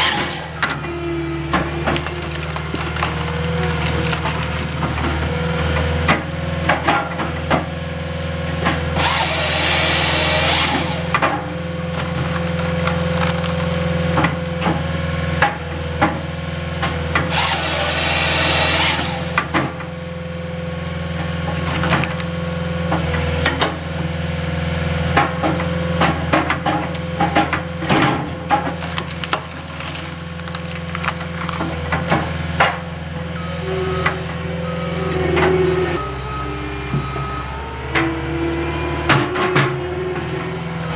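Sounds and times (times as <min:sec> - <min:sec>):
wood splitting knocks and cracks: 0:00.0 - 0:05.2, 0:10.0 - 0:16.2, 0:21.4 - 0:23.8, 0:25.1 - 0:32.8
saw cutting through log: 0:00.0 - 0:05.8, 0:08.9 - 0:14.2, 0:17.2 - 0:19.6.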